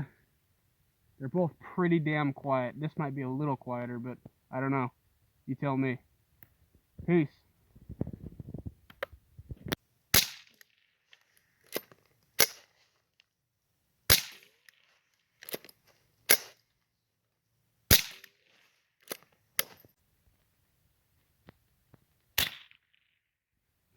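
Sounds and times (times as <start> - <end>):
rifle shots: 10.1 - 10.6, 14.1 - 14.5, 17.9 - 18.3.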